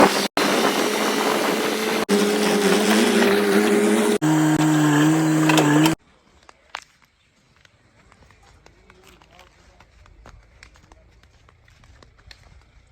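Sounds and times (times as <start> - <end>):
motor running steadily: 0.0 - 6.0.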